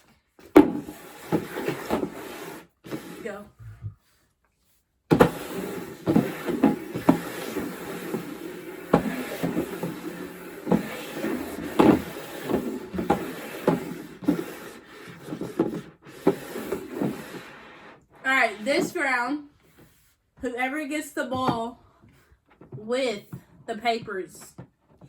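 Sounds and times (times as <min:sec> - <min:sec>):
objects knocking and clattering: 0:05.1 - 0:14.5.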